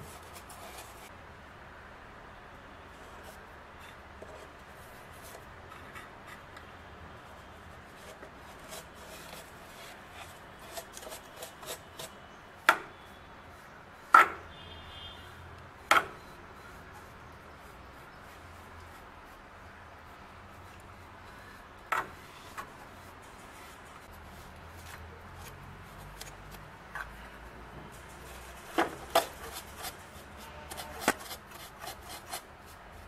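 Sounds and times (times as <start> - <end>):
brush scrubbing a panel: 0.0 - 1.1, 7.9 - 12.2, 28.0 - 33.0.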